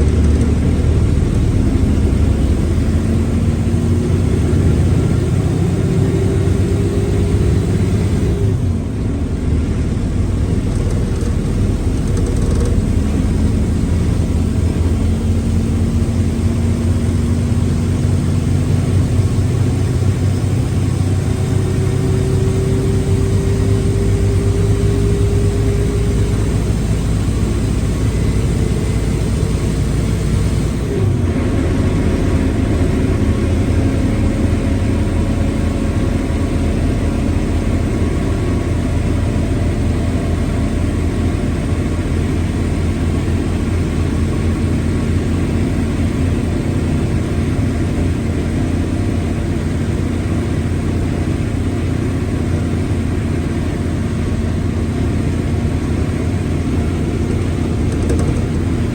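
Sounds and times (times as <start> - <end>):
bus diesel engine drone: 0.0 - 58.9.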